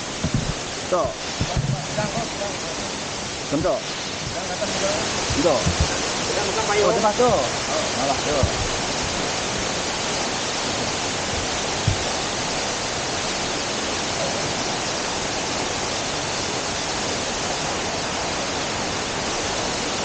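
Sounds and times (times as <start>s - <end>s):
waterfall rushing: 0.0s - 20.0s
low thump: 0.2s - 0.6s, 5.3s - 6.0s, 8.4s - 8.9s, 11.3s - 12.2s.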